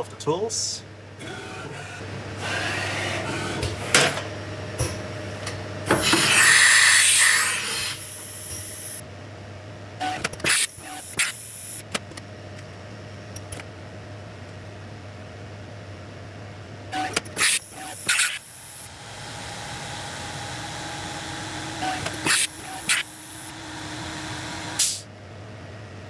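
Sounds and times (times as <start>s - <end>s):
loud hiss: 6.0s - 9.0s, 21.4s - 25.0s
low machine hum: 17.6s - 26.0s.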